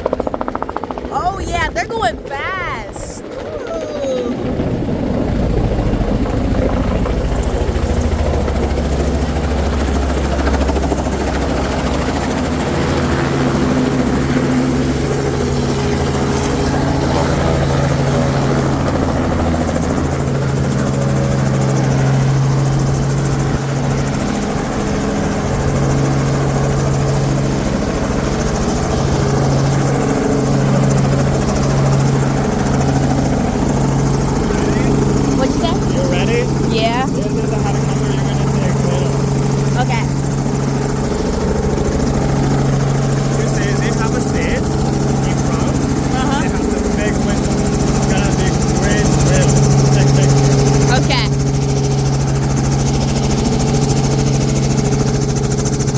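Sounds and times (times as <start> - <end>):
helicopter rotor and engine drone: 0.0 - 55.9.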